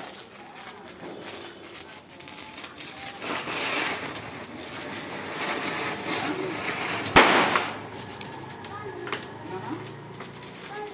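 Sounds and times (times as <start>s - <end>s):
firework hissing: 0.0s - 10.9s
firecracker bang: 1.0s - 9.4s.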